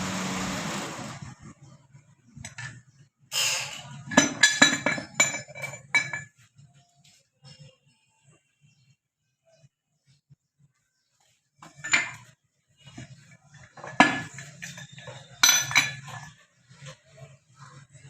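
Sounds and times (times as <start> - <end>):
steel tools clanking: 13.7 - 16.3.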